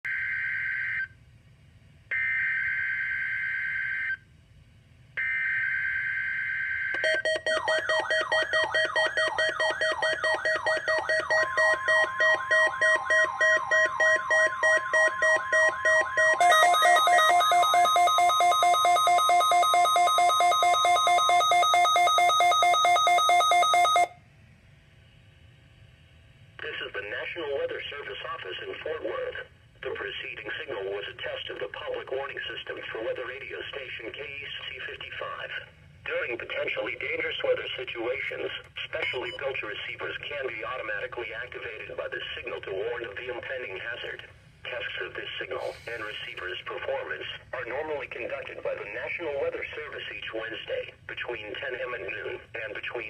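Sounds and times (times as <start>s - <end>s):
fast sweeping alarm beeps: 5.2s - 24.1s
steady warning alarm tone: 5.2s - 24.2s.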